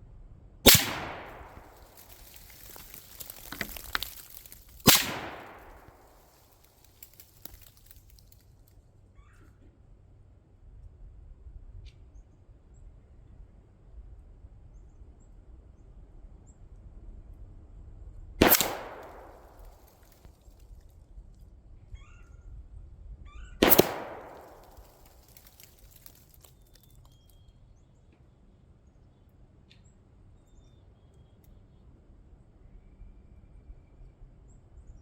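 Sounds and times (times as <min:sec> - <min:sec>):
gunshots: 0:00.7 - 0:03.8, 0:04.8 - 0:06.2, 0:18.4 - 0:19.7, 0:23.6 - 0:25.1.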